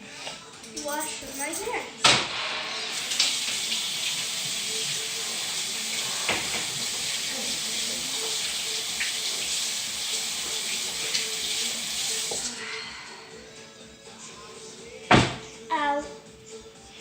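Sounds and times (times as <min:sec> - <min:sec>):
tap water running into sink: 0:02.9 - 0:12.5.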